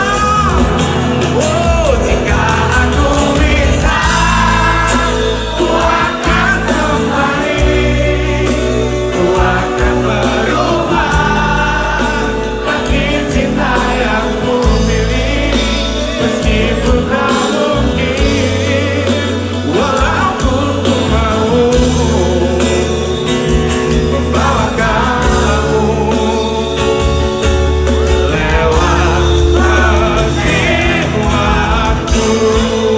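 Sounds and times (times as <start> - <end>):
person singing: 0.0 - 32.9
song with bass and backing: 0.0 - 32.9.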